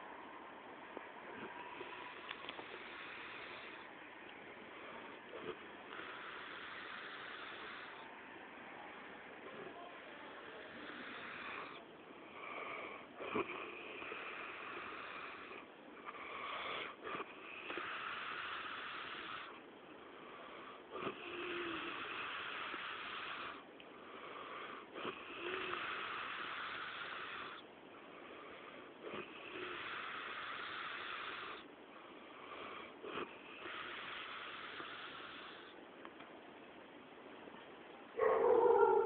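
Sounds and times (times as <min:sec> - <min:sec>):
rasping breath: 0:04.7 - 0:08.2, 0:10.4 - 0:35.8
man snoring: 0:05.4 - 0:08.0, 0:21.0 - 0:23.6, 0:25.0 - 0:27.6, 0:29.1 - 0:31.7, 0:32.8 - 0:35.8.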